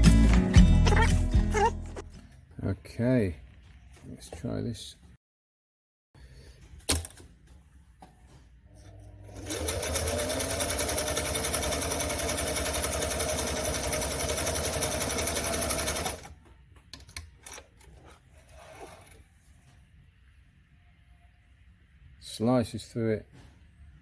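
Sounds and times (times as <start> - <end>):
sewing machine running: 9.3 - 16.3.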